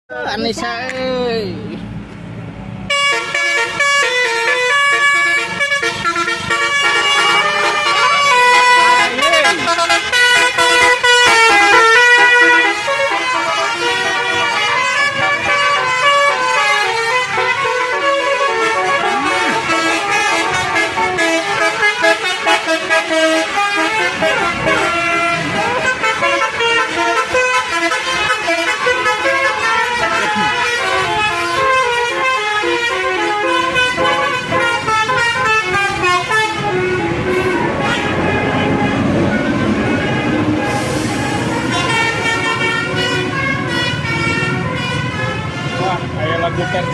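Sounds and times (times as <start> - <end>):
engine and road noise: 0.1 - 46.9
multi-tone musical bus horns: 2.9 - 46.9.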